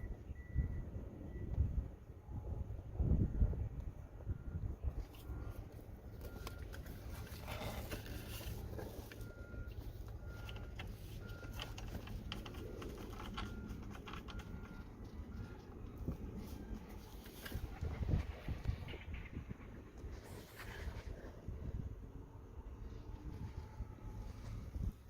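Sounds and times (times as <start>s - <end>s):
wind rumble on microphone: 0.0s - 10.6s, 11.2s - 25.0s
small clicks and rattles: 6.3s - 15.9s.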